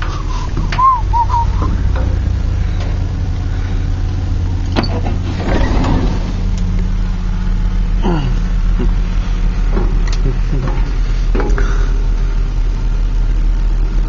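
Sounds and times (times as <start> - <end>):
rattling: 0.0 - 8.0
large engine idling: 0.0 - 14.0.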